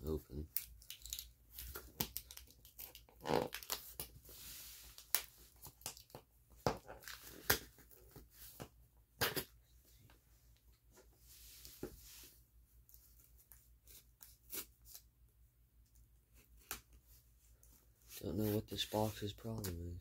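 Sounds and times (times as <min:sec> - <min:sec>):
tearing scrape: 0:13.9 - 0:15.0.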